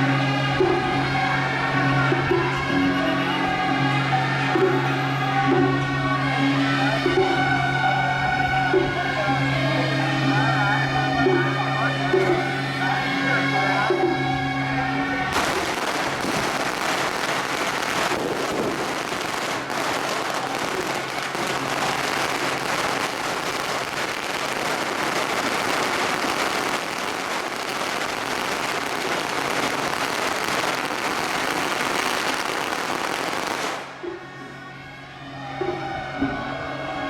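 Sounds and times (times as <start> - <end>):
firecrackers crackling: 6.4 - 34.3.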